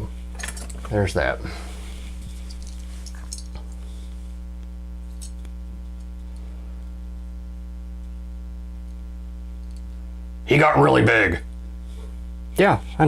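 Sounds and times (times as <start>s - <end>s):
electrical mains hum: 0.0s - 13.0s
faint clicks: 9.6s - 10.0s.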